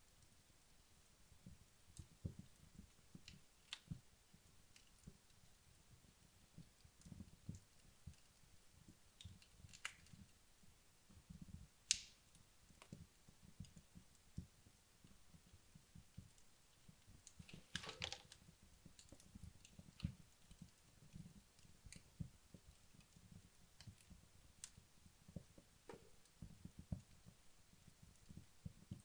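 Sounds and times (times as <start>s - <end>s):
fire crackling: 0.0s - 29.0s
log popping: 11.9s - 12.2s, 17.2s - 20.8s.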